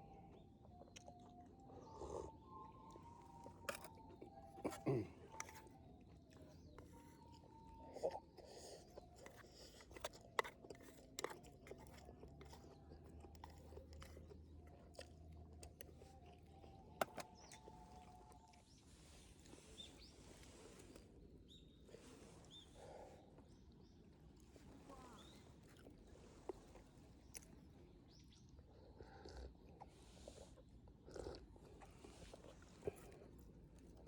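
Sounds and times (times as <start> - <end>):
soft chewing and crunching: 0.0 - 34.0.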